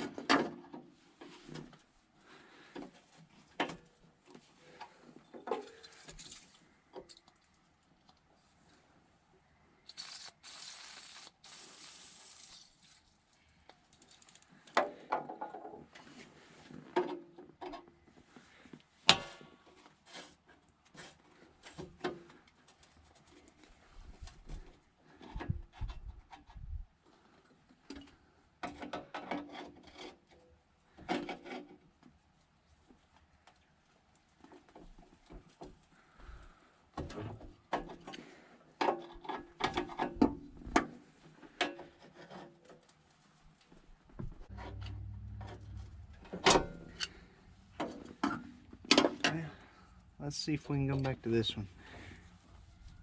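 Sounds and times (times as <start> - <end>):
brief hiss: 9.9 - 12.9.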